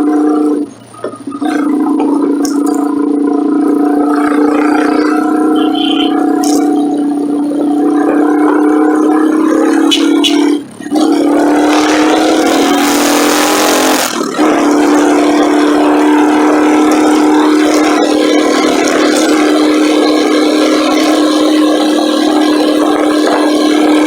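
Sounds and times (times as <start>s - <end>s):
motorcycle riding drone: 0.0s - 24.0s.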